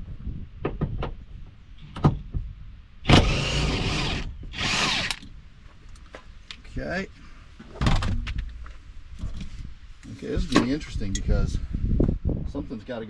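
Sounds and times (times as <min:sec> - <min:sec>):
cordless power tool running: 0:03.1 - 0:05.2.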